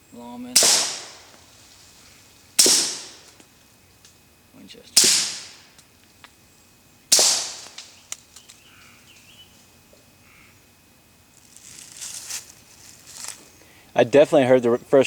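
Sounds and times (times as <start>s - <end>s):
suppressed gunshot crack: 0.6s - 1.4s, 2.6s - 3.3s, 5.0s - 5.7s, 7.1s - 8.0s.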